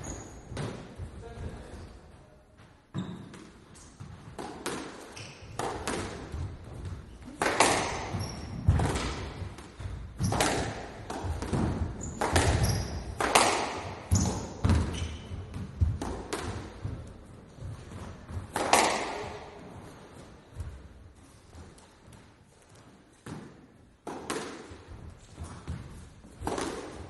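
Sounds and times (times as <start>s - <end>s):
shoe squeaks: 0.0s - 0.6s, 1.5s - 4.0s, 5.1s - 5.6s, 8.0s - 8.8s, 10.2s - 10.5s, 11.9s - 13.2s, 14.1s - 15.5s
squash ball hits echoing: 0.0s - 1.7s, 2.9s - 22.2s, 23.2s - 27.0s.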